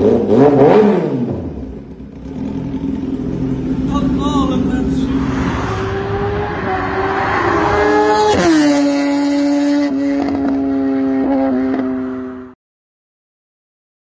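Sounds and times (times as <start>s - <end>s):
motorcycle engine passing by: 2.2s - 12.6s.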